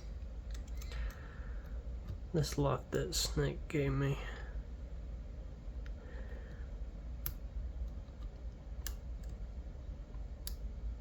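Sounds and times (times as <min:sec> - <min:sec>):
steady low hum: 0:00.0 - 0:11.0
small metallic clicks: 0:00.4 - 0:01.2.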